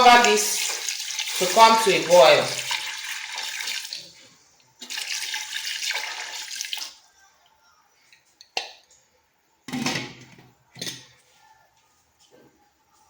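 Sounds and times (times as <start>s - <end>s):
water pouring into pot: 0.0s - 4.2s, 4.8s - 7.0s
kitchenware knocking and clattering: 9.7s - 11.1s.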